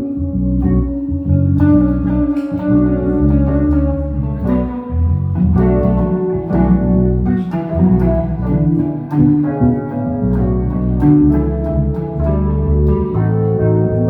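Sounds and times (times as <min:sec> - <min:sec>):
guitar playing: 0:00.0 - 0:14.0
low bass line: 0:00.0 - 0:14.0.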